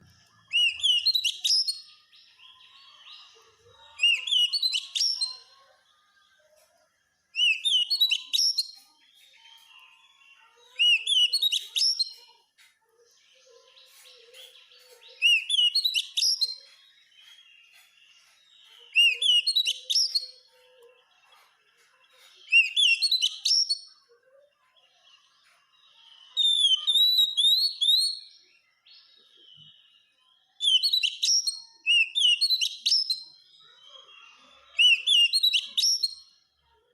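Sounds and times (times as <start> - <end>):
soft bird twittering: 0.0 - 6.5, 7.2 - 36.8
bird singing whistled phrases: 0.5 - 3.2, 4.0 - 5.5, 7.3 - 8.8, 10.8 - 12.3, 14.4 - 17.9, 18.6 - 20.5, 22.4 - 24.0, 26.1 - 36.4.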